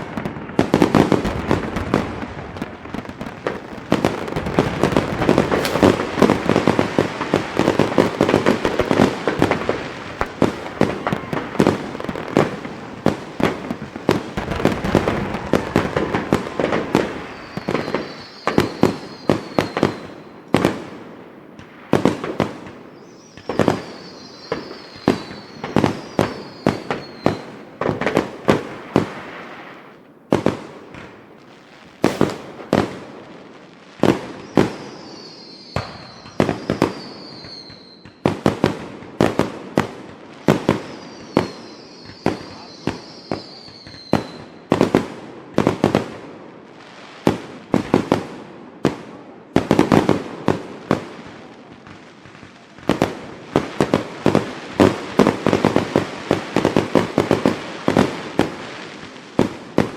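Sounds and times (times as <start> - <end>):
fireworks bangs and crackling: 0.0 - 59.9
high falling whistle: 4.8 - 8.1, 14.4 - 20.2, 34.9 - 38.0.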